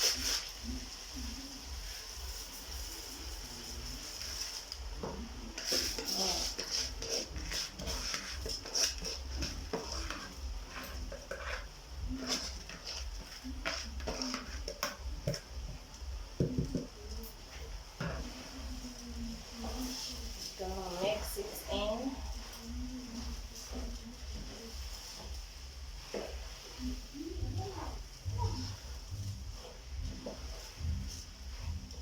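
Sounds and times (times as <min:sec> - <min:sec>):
steady hiss: 0:00.0 - 0:32.0
utensil scraping cooking pot: 0:03.9 - 0:15.5.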